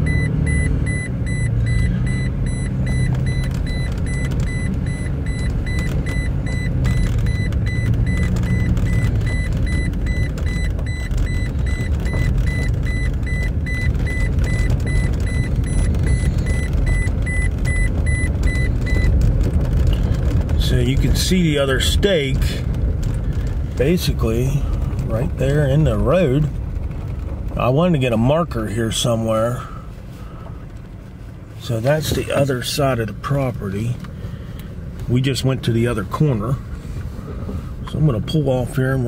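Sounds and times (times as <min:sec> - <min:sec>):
seatbelt warning chime: 0:00.0 - 0:19.2
engine and road rumble: 0:00.0 - 0:39.0.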